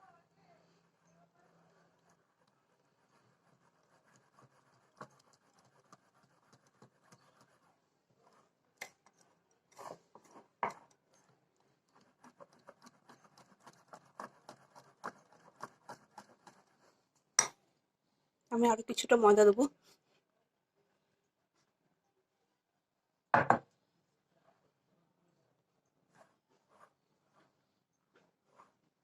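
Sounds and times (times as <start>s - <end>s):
utensil stirring batter in bowl: 0.0s - 17.6s, 25.8s - 29.0s.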